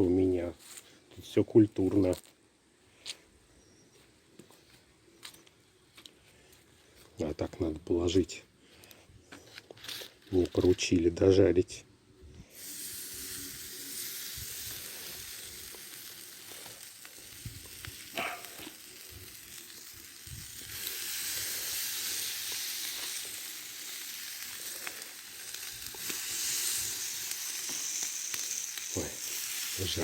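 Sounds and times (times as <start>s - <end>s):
food sizzling in frying: 12.5s - 30.0s.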